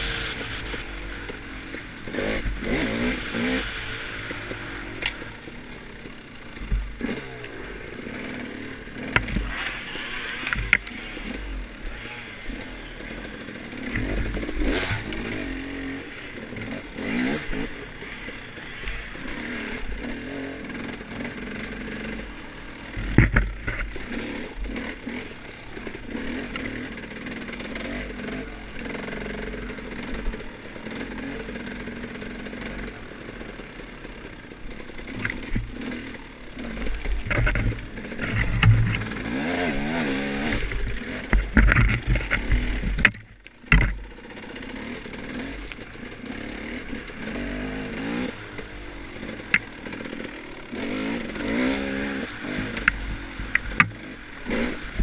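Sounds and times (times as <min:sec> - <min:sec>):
dirt bike engine revving: 0:00.0 - 0:55.0
knocks and clatter: 0:23.0 - 0:24.1, 0:36.9 - 0:39.7, 0:40.4 - 0:44.1.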